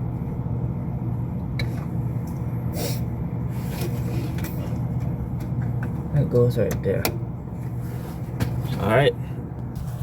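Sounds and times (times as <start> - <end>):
low machinery hum: 0.0 - 10.0.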